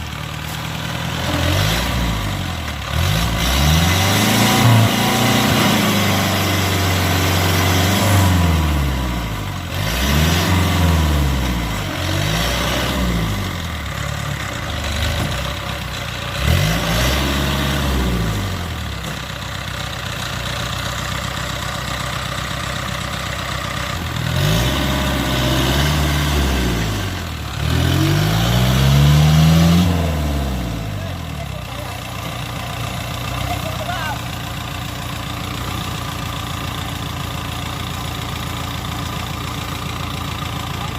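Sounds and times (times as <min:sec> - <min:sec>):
diesel engine revving: 0:00.0 - 0:40.9.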